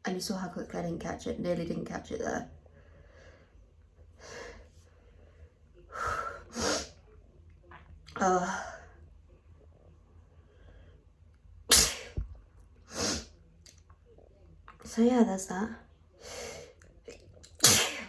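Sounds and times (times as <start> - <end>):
person sneezing: 11.7 - 12.2, 12.9 - 13.3, 17.6 - 18.0.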